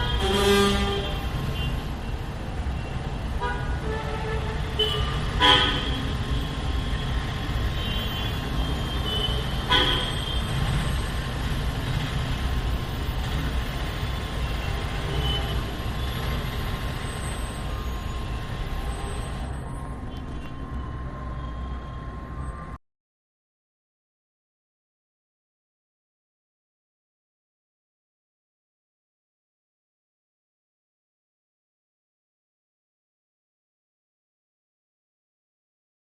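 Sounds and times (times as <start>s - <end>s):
vehicle horns honking: 0.0s - 1.8s, 3.4s - 10.6s, 14.2s - 16.2s.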